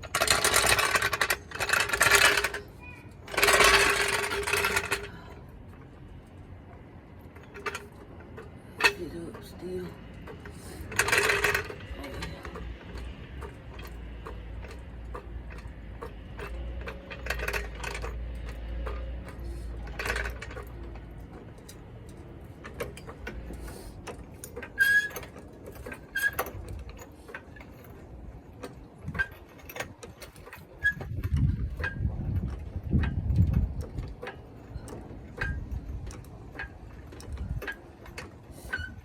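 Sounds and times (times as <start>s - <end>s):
metal tools clinking: 0.0s - 5.3s, 8.8s - 9.5s, 10.3s - 14.0s.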